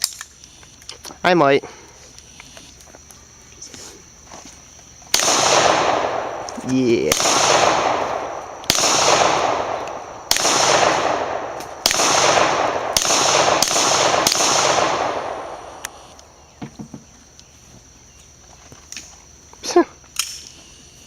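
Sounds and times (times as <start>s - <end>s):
gunshots with echo: 5.1s - 16.2s.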